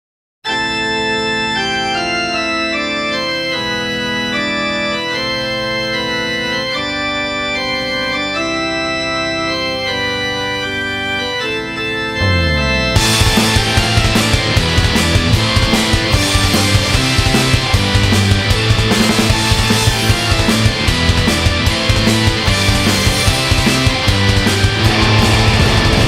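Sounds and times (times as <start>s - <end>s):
organ keyboard chords: 0.4s - 26.0s
drums and guitars: 12.3s - 26.0s.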